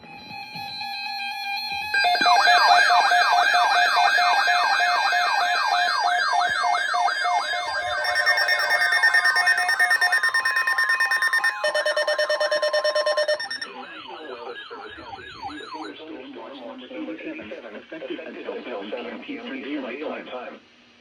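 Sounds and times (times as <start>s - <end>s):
electronic emergency alert tone: 2.0s - 13.7s.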